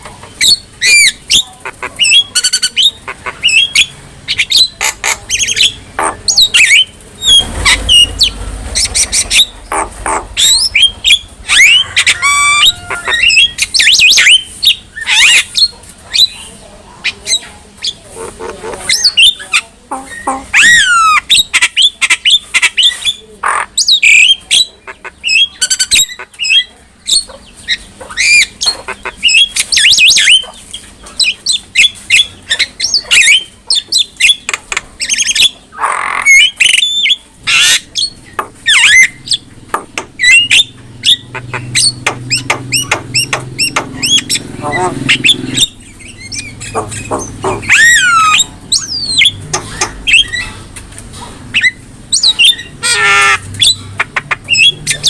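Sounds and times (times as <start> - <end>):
bird singing whistles and squawks: 20.0 - 23.2, 40.2 - 44.4, 45.1 - 50.5, 51.5 - 55.0.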